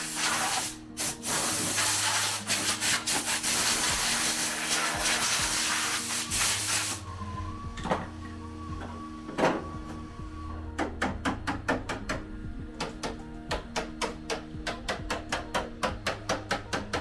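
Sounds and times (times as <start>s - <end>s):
sanding car bodywork: 0.0s - 7.0s
quiet background music: 0.0s - 17.0s.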